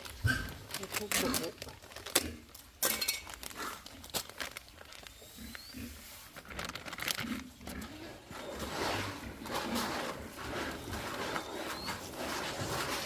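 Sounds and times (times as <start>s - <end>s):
pigs grunting: 7.2s - 13.0s.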